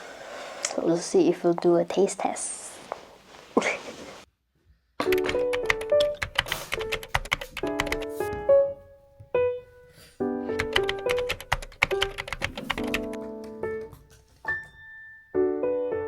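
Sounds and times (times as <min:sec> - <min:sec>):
melodic background music: 0:05.1 - 0:13.9.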